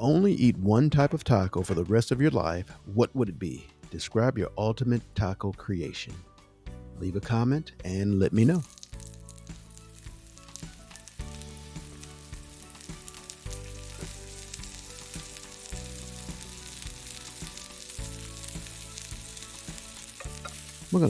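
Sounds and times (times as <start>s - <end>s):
background music chords: 0.0s - 21.0s
peppers sizzling in frying pan: 8.3s - 21.0s.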